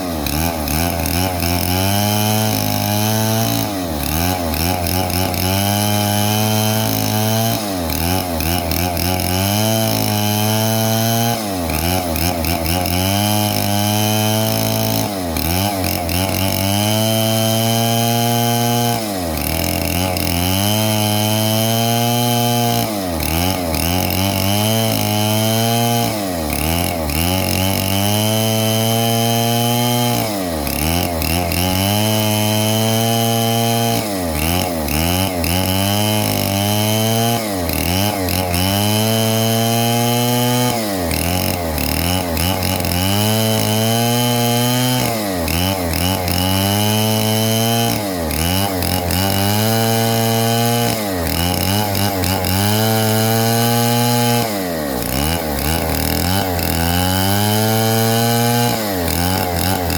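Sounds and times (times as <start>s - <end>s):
chainsaw running at high revs: 0.0s - 59.9s.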